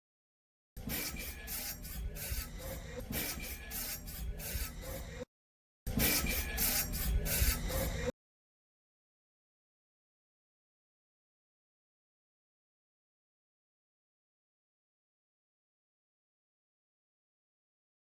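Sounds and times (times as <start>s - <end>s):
brakes scraping on wheel: 0.8s - 5.2s, 5.9s - 8.1s.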